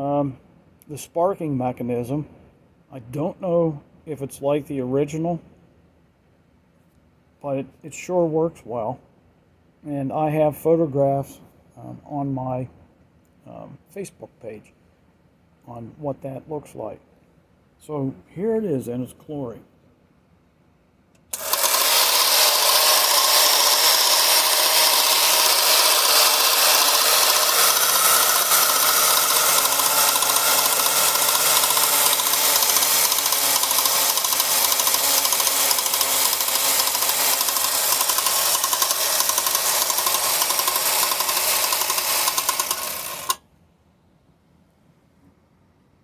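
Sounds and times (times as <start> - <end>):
windup toy whirring rattle: 21.3 - 43.4.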